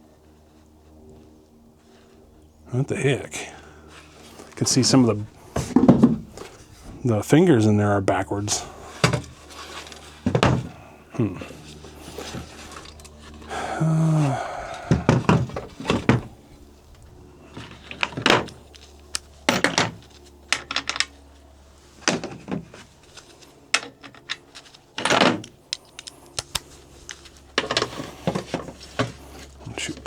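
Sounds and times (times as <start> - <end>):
metal tools clinking and rattling: 17.5 - 21.2.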